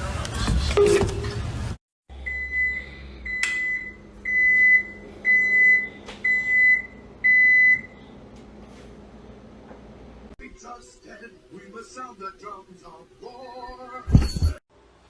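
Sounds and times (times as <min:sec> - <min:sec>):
appliance beeps: 0:02.2 - 0:08.0.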